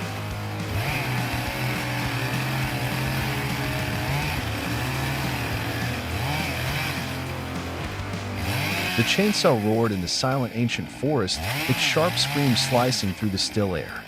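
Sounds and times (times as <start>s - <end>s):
chainsaw running: 0.0s - 13.7s.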